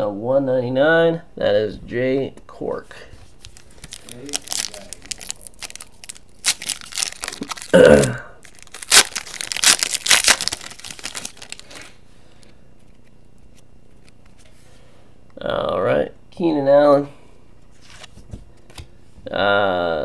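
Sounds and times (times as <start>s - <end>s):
wrapper tearing and crinkling: 3.4s - 12.0s.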